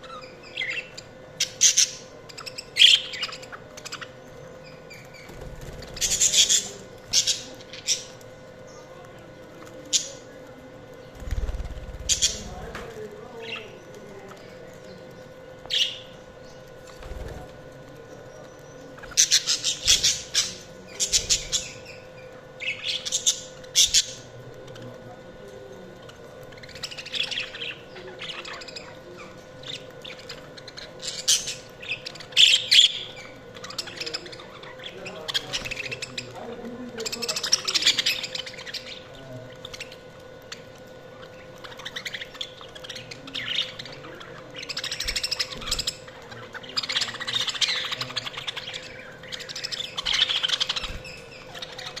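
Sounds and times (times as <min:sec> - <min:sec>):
budgerigars chirping: 0:19.0 - 0:22.0, 0:26.6 - 0:36.4, 0:37.0 - 0:40.0, 0:41.2 - 0:52.0.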